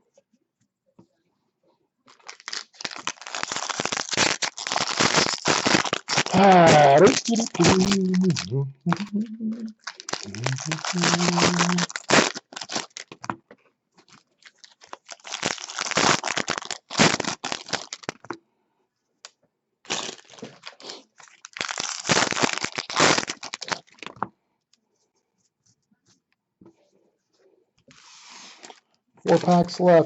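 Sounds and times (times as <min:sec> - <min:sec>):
wrapper rustling: 0:02.1 - 0:09.1, 0:09.7 - 0:13.3, 0:14.0 - 0:18.3, 0:19.9 - 0:24.2, 0:28.0 - 0:29.9
wrappers crinkling and tearing: 0:02.1 - 0:09.1, 0:09.8 - 0:13.4, 0:14.0 - 0:18.3, 0:19.9 - 0:24.2, 0:28.0 - 0:29.8.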